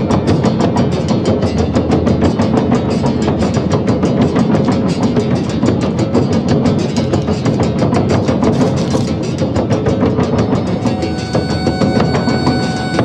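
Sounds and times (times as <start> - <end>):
fast percussion strokes: 0.0 - 13.0
folk ensemble playing: 8.3 - 13.0.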